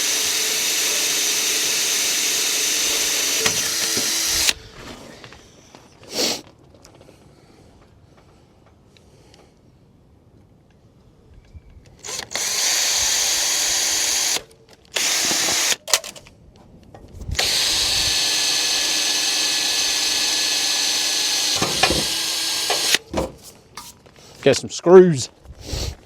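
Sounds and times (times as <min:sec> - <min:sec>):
power drill drilling into metal: 0:00.0 - 0:04.6, 0:12.0 - 0:16.1, 0:17.4 - 0:23.2.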